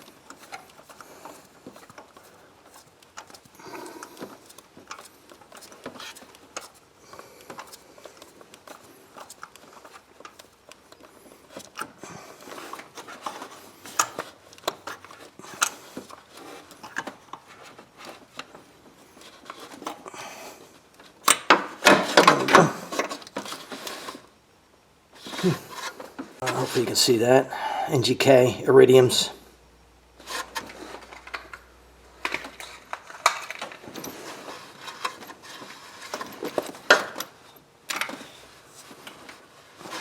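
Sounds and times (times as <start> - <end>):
light clicks and knocks of tools: 0.0 - 18.6.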